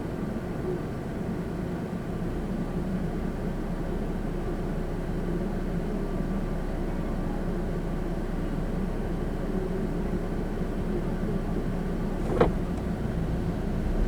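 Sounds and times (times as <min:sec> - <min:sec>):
car engine and tyre noise: 0:11.4 - 0:14.0.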